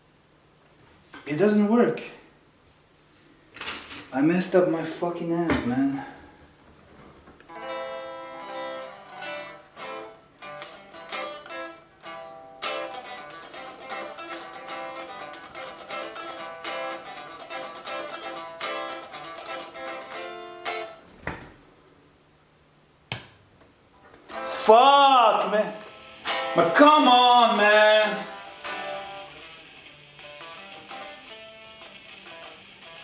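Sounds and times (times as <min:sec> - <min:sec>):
quiet electric guitar playing: 0:07.4 - 0:21.1, 0:24.2 - 0:33.0.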